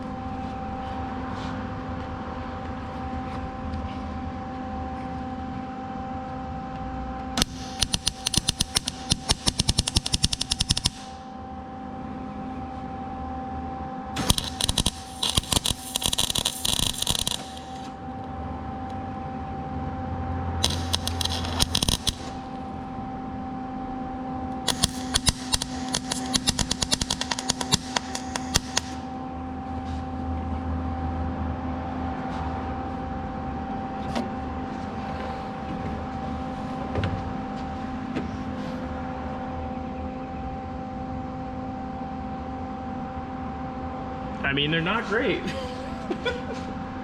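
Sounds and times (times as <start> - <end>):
electrical hum: 0.0 - 47.0
welding arc crackling: 7.4 - 11.3, 14.2 - 18.0, 20.6 - 22.6, 24.6 - 29.1.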